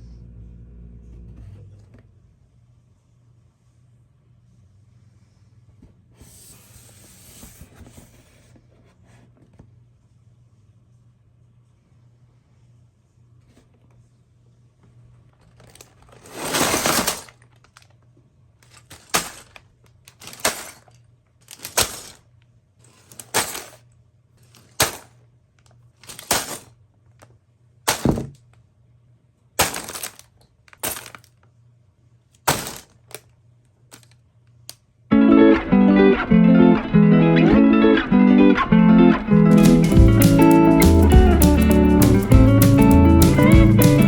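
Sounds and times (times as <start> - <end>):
plastic pieces clattering: 15.3 - 17.9, 18.6 - 22.2, 22.8 - 23.8, 24.4 - 25.2, 26.0 - 26.7, 27.9 - 28.4, 29.6 - 31.4, 32.4 - 33.3, 33.9 - 34.2
packaging crinkling: 15.4 - 17.9, 18.6 - 22.2, 24.4 - 25.1, 26.0 - 26.7, 29.6 - 31.3, 32.5 - 33.2.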